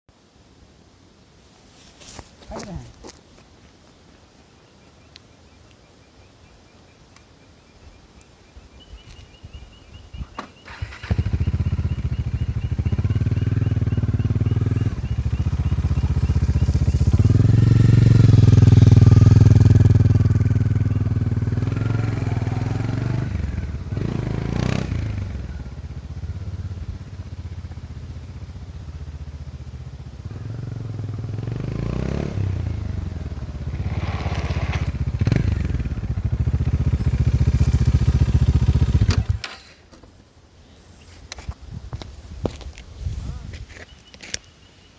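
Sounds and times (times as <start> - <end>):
motorcycle engine idling and revving: 10.4 - 39.7.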